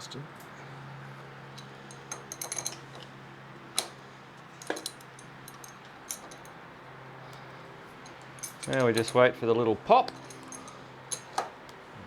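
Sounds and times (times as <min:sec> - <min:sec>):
hand tools clicking on metal: 0:04.6 - 0:06.6, 0:08.0 - 0:09.3, 0:10.0 - 0:11.6.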